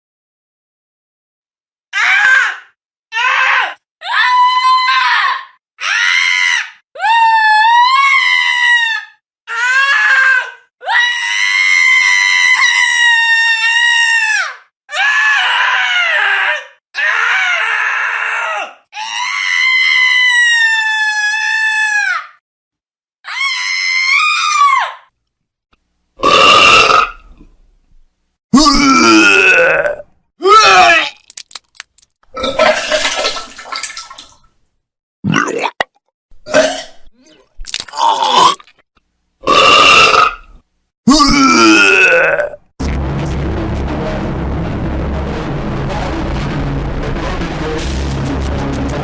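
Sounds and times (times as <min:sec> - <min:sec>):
high-pitched voice screaming: 0:28.6 - 0:31.2
rough low sound: 0:42.8 - 0:49.0.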